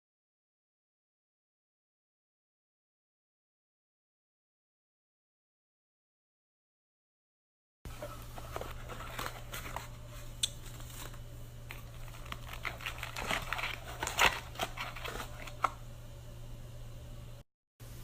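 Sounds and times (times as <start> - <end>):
crinkling and clicking handling: 7.9 - 15.8
steady low hum: 7.9 - 18.0.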